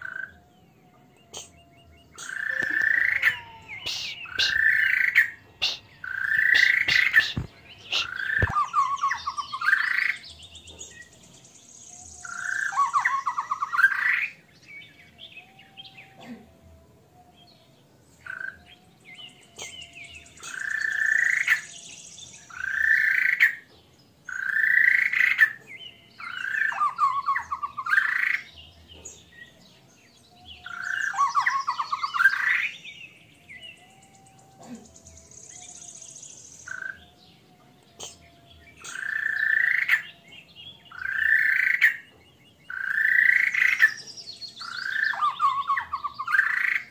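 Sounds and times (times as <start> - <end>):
bird singing croaking phrases: 0.0 - 46.9
short higher bird chirps: 2.2 - 10.2.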